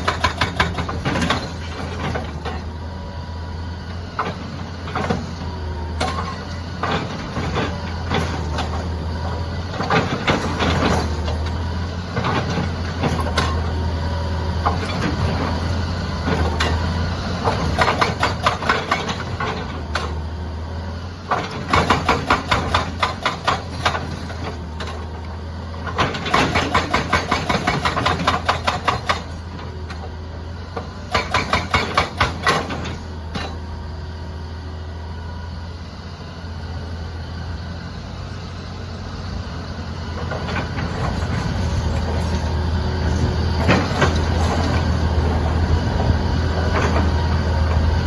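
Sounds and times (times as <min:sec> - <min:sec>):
hydraulic breaker hammer pounding: 0:00.0 - 0:02.6, 0:17.4 - 0:20.2, 0:21.3 - 0:25.1, 0:25.9 - 0:29.5, 0:31.0 - 0:33.6
diesel engine running: 0:00.0 - 0:48.0.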